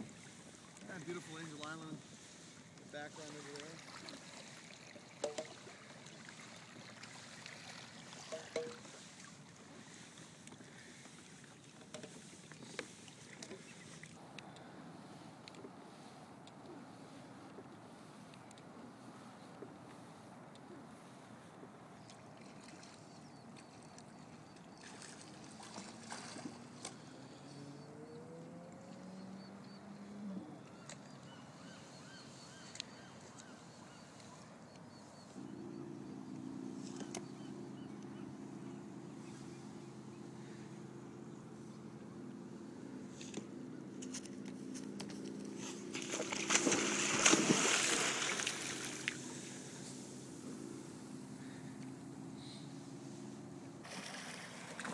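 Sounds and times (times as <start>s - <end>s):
kayak paddle strokes: 0.0s - 14.2s, 43.1s - 51.7s, 52.4s - 54.9s
water lapping against hull: 0.0s - 14.2s, 15.0s - 27.9s, 44.2s - 54.9s.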